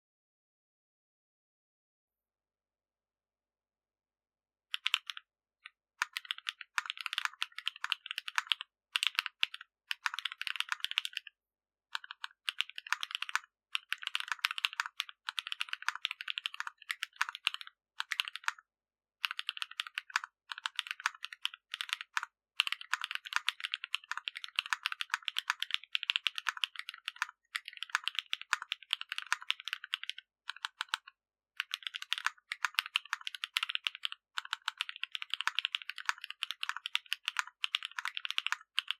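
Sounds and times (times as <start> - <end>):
fast mechanical keyboard typing: 4.8 - 5.2, 6.0 - 11.2, 12.0 - 18.6, 19.2 - 38.9.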